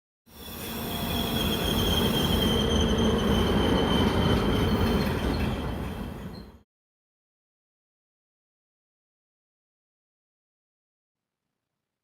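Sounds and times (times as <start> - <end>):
train brakes squealing: 0.3 - 6.6.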